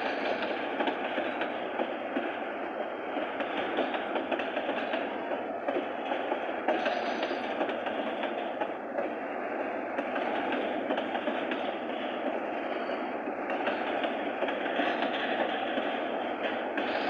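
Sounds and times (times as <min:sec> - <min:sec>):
freight train cars rumbling: 0:00.0 - 0:17.0
wheel clatter over rail joints: 0:03.2 - 0:17.0.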